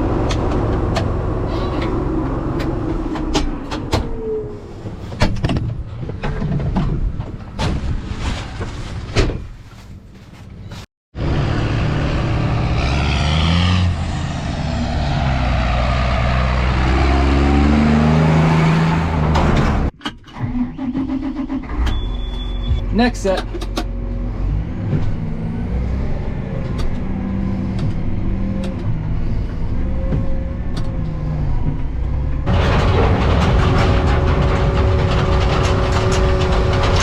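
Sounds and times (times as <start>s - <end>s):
heavy machinery engine running: 0.0s - 3.7s, 23.9s - 37.0s
sharp knocks and rattles: 32.4s - 37.0s.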